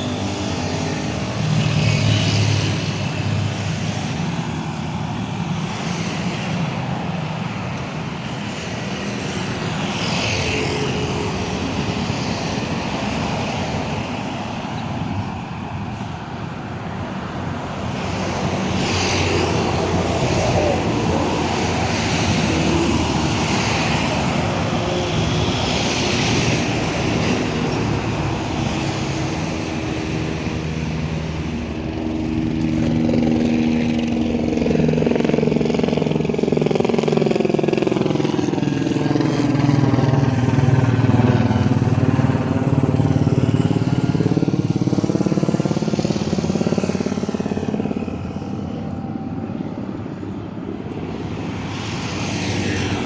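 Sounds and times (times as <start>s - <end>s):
low-flying airplane passing: 0.0s - 53.0s
street traffic: 0.0s - 53.0s
motorcycle engine: 16.8s - 51.2s.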